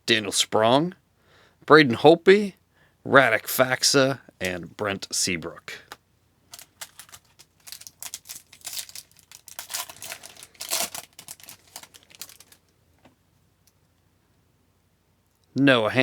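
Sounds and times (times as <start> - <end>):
foil wrapper crinkling and tearing: 6.5 - 12.7.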